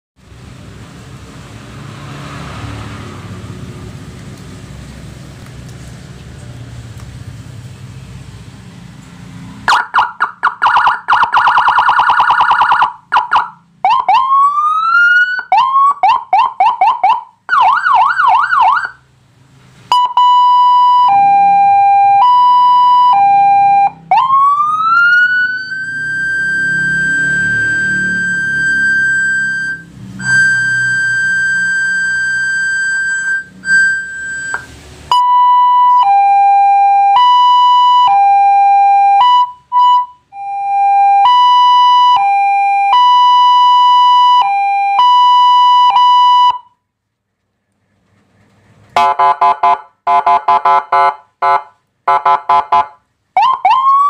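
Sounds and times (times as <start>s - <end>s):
electronic siren cycling tones: 9.7s - 19.0s, 19.9s - 46.8s.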